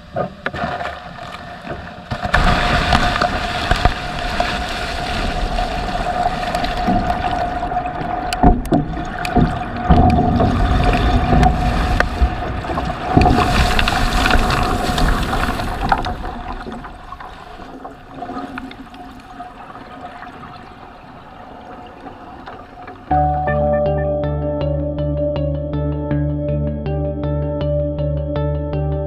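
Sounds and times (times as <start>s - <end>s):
water sloshing and gurgling: 0.0s - 23.1s
knocks: 8.4s - 11.7s.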